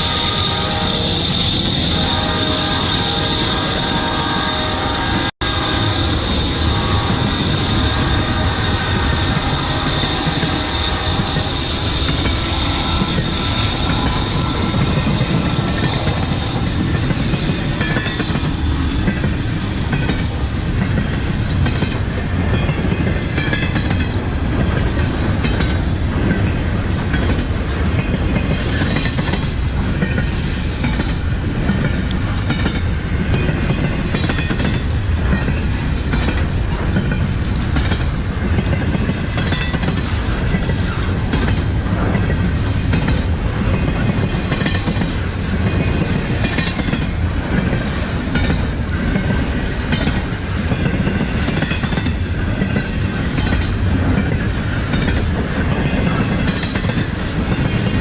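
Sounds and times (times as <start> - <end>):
high steady tone: 0.0 - 18.4
freight train rumbling past: 0.0 - 58.0.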